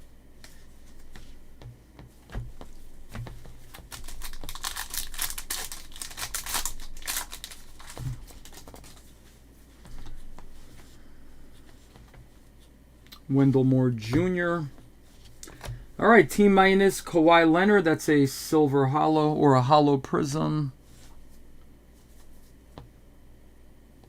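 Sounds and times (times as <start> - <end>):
light handling thumps: 1.1 - 3.9
wrapper tearing and crinkling: 3.7 - 9.0.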